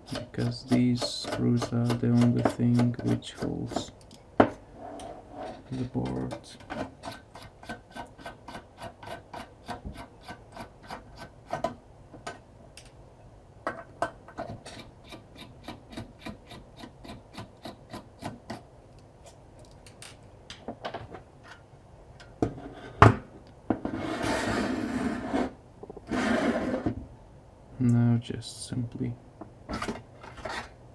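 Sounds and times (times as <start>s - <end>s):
short rubbing scrape: 23.9s - 26.9s.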